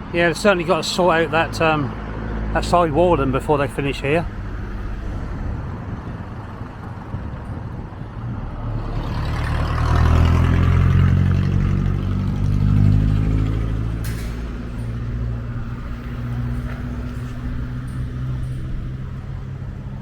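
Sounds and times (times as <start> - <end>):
vehicle driving past: 8.2 - 20.0.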